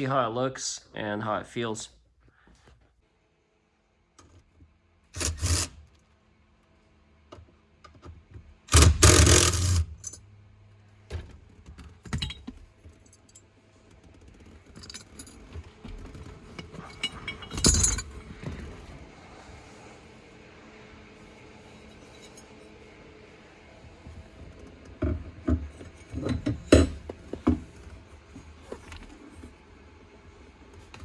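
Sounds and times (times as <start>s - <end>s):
metal hardware clinking: 16.6s - 18.2s.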